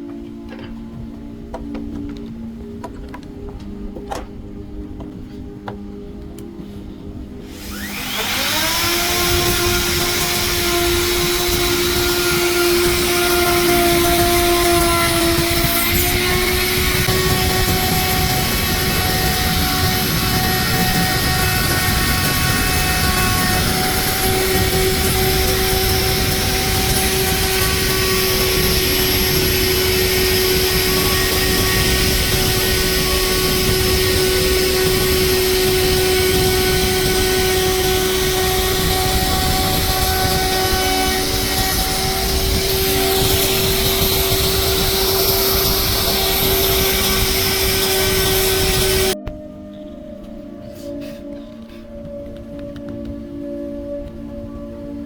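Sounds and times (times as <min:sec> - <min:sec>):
electric power tool whining: 0:07.4 - 0:49.2.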